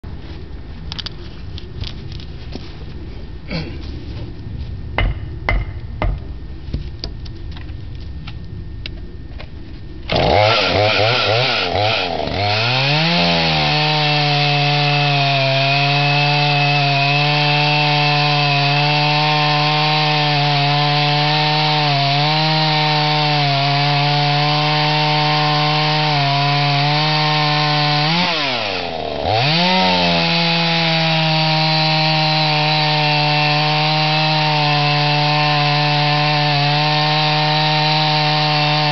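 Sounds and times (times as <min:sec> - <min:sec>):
chainsaw cutting wood: 0:10.1 - 0:38.9.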